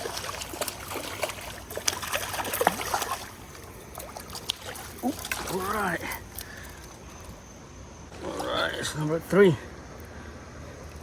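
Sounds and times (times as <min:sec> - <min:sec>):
short splashes: 0:00.0 - 0:06.4
creek water trickling: 0:00.0 - 0:11.0.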